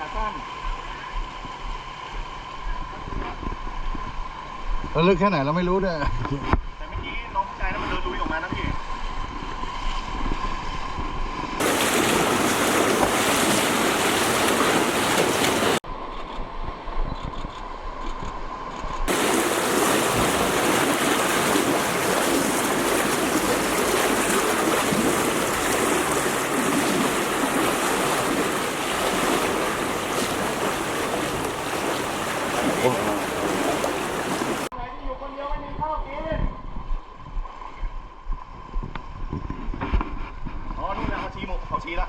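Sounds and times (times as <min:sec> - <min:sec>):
floodwater rushing: 0:11.6 - 0:15.8, 0:19.1 - 0:34.7.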